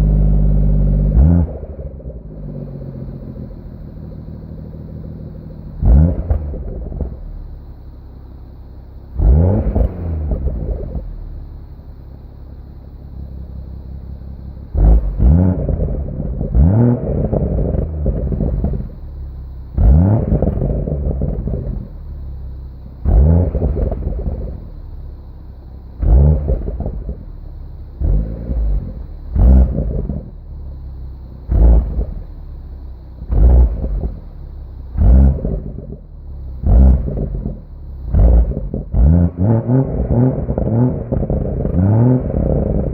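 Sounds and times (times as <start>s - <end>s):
car engine revving: 0.0s - 42.9s.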